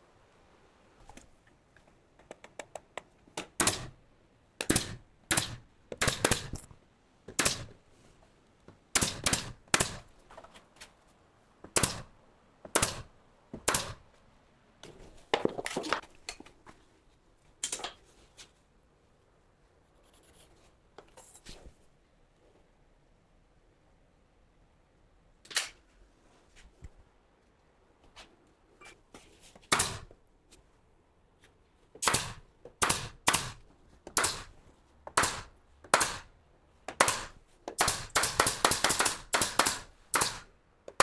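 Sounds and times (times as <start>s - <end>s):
faint clicks and knocks: 1.0s - 3.9s
pneumatic nail gun firing: 3.6s - 4.0s, 4.6s - 6.7s, 7.3s - 7.8s, 9.0s - 10.1s, 11.7s - 12.1s, 12.7s - 13.1s, 13.7s - 14.0s, 29.7s - 30.1s, 32.0s - 36.3s, 37.0s - 41.0s.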